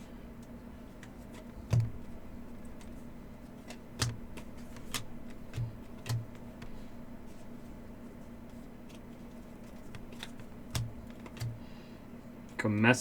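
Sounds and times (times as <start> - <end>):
steady low hum: 0.0 - 13.0
cards tapping on a tabletop: 1.4 - 3.0, 3.6 - 7.4, 9.6 - 11.8.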